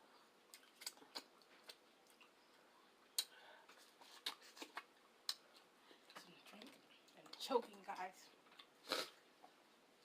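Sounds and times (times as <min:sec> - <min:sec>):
wet mouth clicks while chewing: 0:00.5 - 0:02.4, 0:03.0 - 0:03.4.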